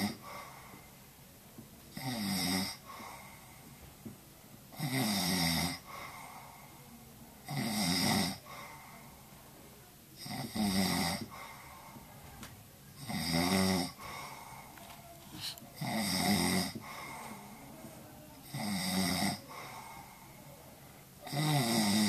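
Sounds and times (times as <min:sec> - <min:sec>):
man snoring: 0:00.0 - 0:00.3, 0:02.0 - 0:02.8, 0:04.8 - 0:05.9, 0:07.4 - 0:08.5, 0:10.2 - 0:11.3, 0:13.0 - 0:14.2, 0:15.8 - 0:17.1, 0:18.4 - 0:19.9, 0:21.2 - 0:22.0.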